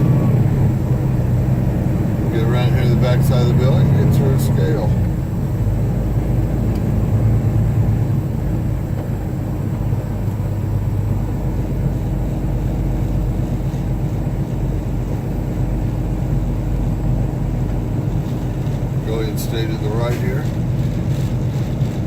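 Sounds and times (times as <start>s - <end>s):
truck diesel engine rumbling: 0.0s - 22.0s.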